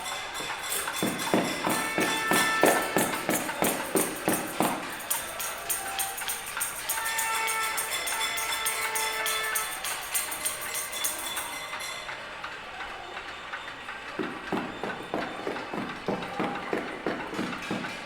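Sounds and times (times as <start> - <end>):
steady ringing tones: 0.0 - 12.3
pots and pans banging: 0.3 - 6.0, 14.2 - 18.0.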